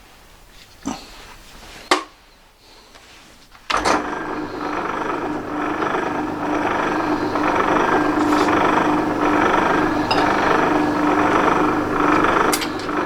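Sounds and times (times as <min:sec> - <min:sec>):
workshop machine tool humming: 0:03.7 - 0:13.0.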